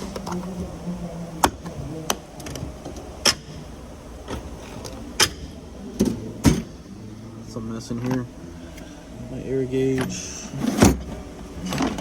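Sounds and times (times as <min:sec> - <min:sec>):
tools rattling in drawer: 0:10.0 - 0:12.0.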